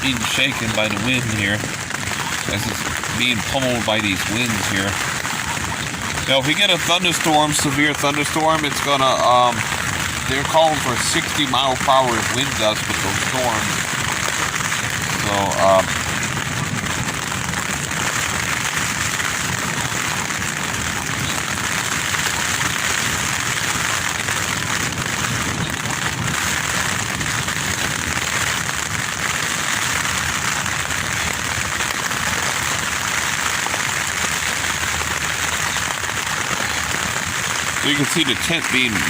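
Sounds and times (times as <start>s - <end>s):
wind buffeting tent fabric: 13.4s - 32.5s.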